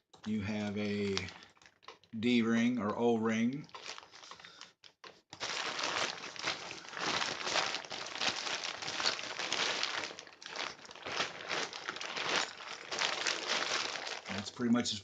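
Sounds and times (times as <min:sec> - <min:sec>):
tent fabric crinkling: 0:03.8 - 0:04.4, 0:05.4 - 0:14.6.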